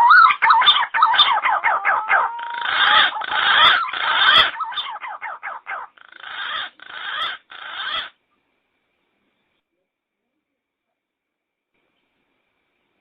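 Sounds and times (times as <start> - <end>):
recorded pigeon lure call: 0.0 - 8.2.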